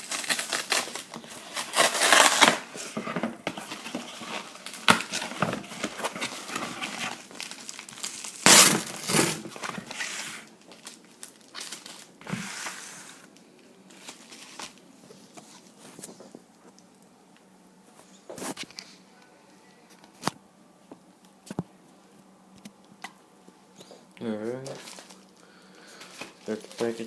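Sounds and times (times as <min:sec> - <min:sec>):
packaging crinkling and tearing: 0:00.0 - 0:12.2, 0:24.5 - 0:25.4.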